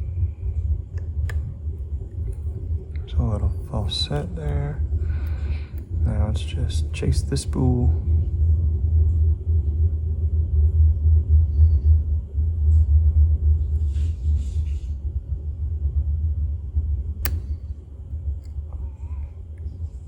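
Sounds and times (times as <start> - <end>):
padlock handling rumble: 0.5 - 7.8, 17.0 - 20.0
lock click: 17.2 - 17.7.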